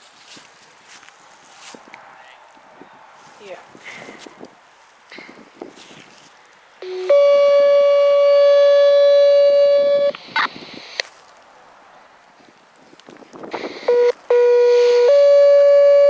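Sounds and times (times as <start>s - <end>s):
two-tone paging tones: 6.8s - 10.6s, 13.8s - 16.0s.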